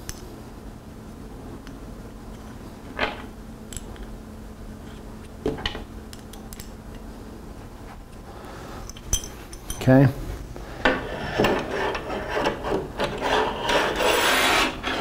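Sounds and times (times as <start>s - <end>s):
metal rack hardware scraping: 10.8s - 15.0s.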